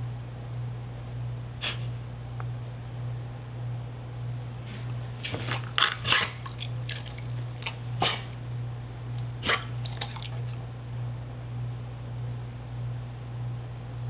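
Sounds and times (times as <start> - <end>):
steady low hum: 0.0 - 14.0
dog throat noises: 5.2 - 8.4, 9.4 - 10.6.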